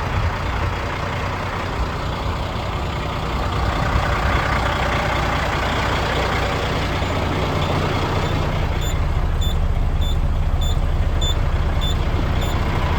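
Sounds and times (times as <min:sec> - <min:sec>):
diesel truck engine running: 0:00.0 - 0:12.9
backup alarm beeping: 0:08.2 - 0:12.6.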